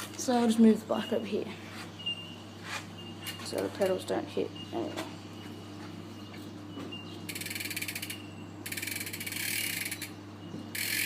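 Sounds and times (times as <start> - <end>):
bicycle hub pawls ticking: 7.3 - 10.1, 10.7 - 11.0.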